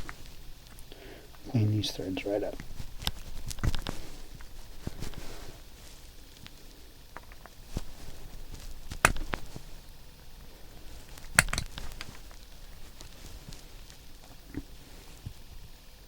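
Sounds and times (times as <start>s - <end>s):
sharp wrench clicks: 11.4s - 11.8s.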